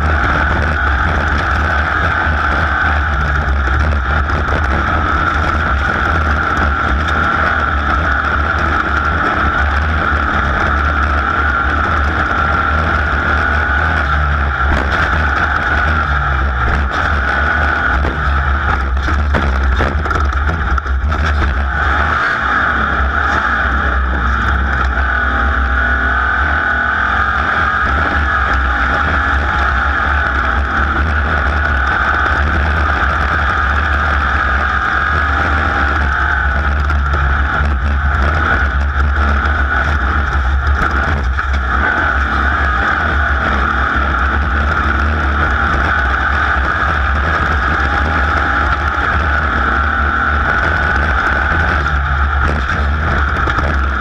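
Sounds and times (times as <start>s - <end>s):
race engine running hard: 0.0s - 54.0s.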